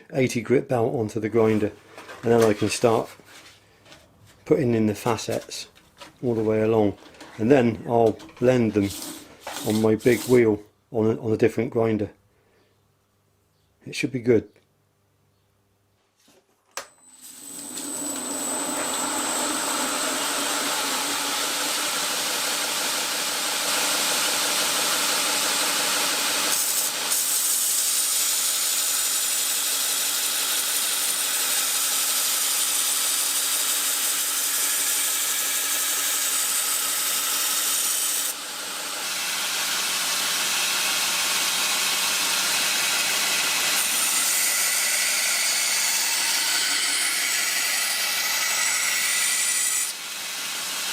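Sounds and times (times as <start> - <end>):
belt grinder grinding steel blade: 17.2 - 50.9.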